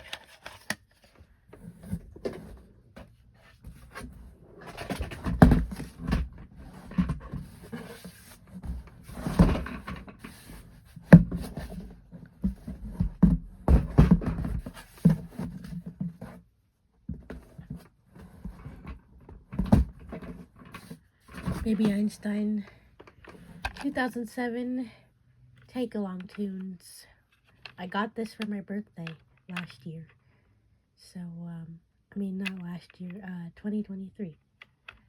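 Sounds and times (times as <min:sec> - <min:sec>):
plastic toys knocking and rustling: 0:00.0 - 0:16.4, 0:17.1 - 0:22.2, 0:23.0 - 0:24.0, 0:27.3 - 0:30.2.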